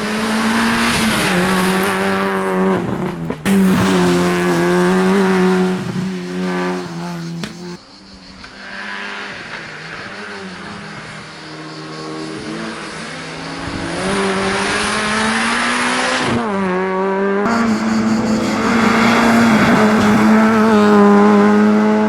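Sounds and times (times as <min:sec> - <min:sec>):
car engine revving under load: 0:00.0 - 0:07.8, 0:12.2 - 0:22.0.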